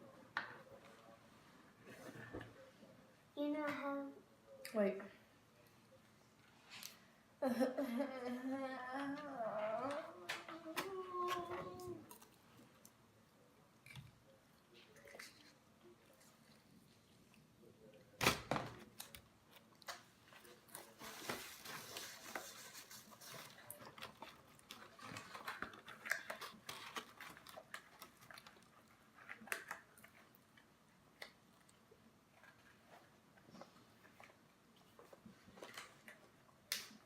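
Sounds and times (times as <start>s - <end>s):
person chewing food: 23.4s - 36.3s.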